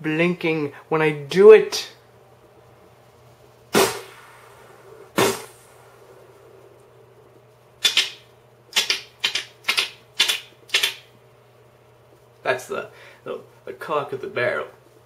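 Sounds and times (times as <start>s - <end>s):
mouth-made gunshots: 3.7s - 4.4s, 5.2s - 5.6s.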